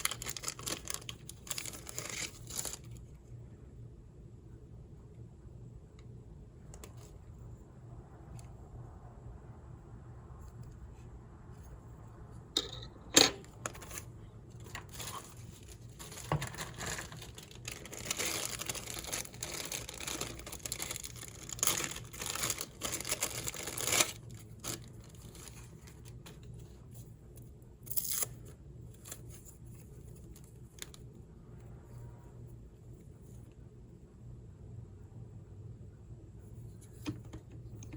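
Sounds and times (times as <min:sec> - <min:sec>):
wrapping crinkling and tearing: 0:00.0 - 0:03.1, 0:13.7 - 0:26.9, 0:27.8 - 0:31.1.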